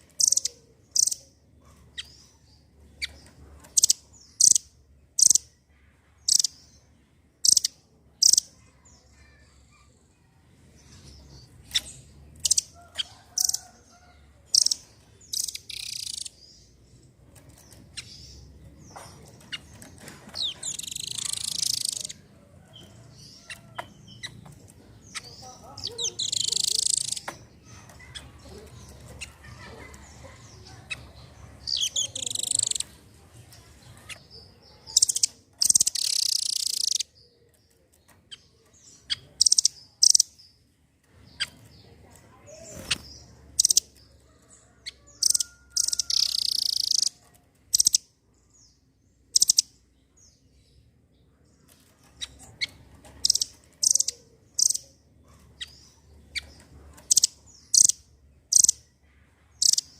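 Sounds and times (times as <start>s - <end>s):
bird chirping: 0.0s - 59.9s
bird trilling: 0.2s - 1.3s, 3.0s - 5.4s, 14.5s - 16.4s, 19.0s - 22.3s, 25.0s - 32.9s, 34.1s - 37.1s, 39.0s - 40.3s, 42.6s - 48.0s, 52.2s - 54.9s, 55.6s - 58.8s.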